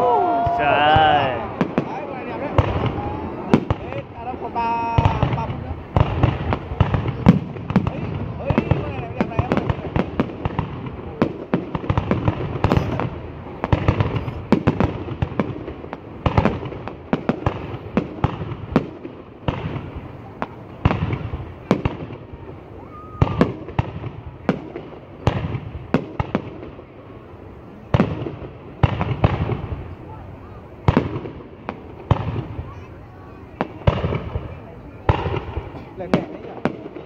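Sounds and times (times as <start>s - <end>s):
fireworks bangs: 0.0s - 37.0s.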